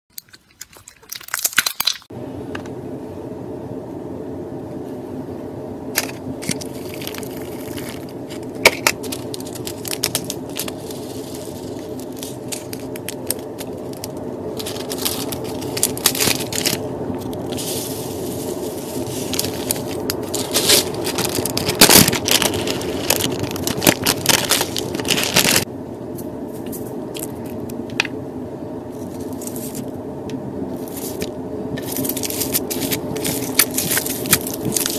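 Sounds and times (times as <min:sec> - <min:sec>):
slime squishing and crackling: 0:00.2 - 0:02.1, 0:06.0 - 0:25.7, 0:30.8 - 0:34.9
low hum: 0:02.1 - 0:34.9.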